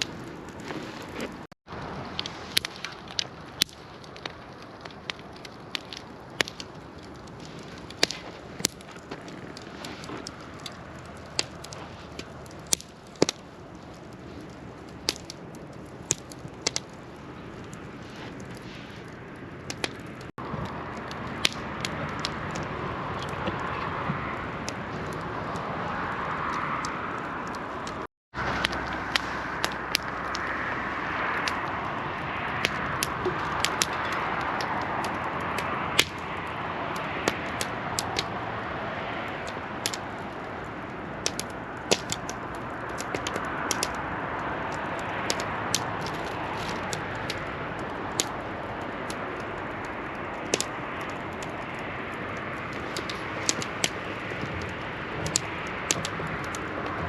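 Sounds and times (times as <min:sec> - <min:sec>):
fire hissing: 0:00.0 - 0:57.0
wood fire crackling and popping: 0:00.0 - 0:57.0.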